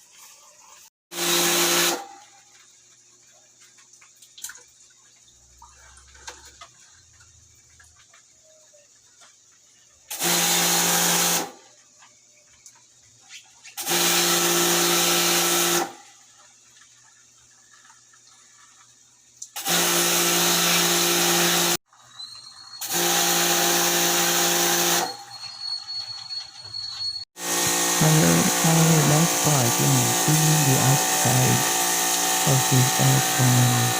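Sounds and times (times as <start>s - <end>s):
pressure washer spraying water: 0.0s - 2.2s, 10.1s - 11.6s, 13.8s - 16.0s, 19.6s - 21.8s, 22.8s - 25.3s, 27.4s - 33.9s.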